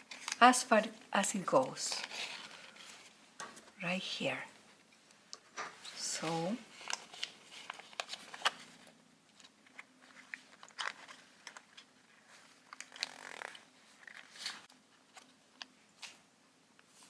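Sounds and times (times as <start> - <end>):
soft paper rustle: 1.5 - 3.8, 5.7 - 17.0
paper crinkling and tapping: 6.8 - 12.0.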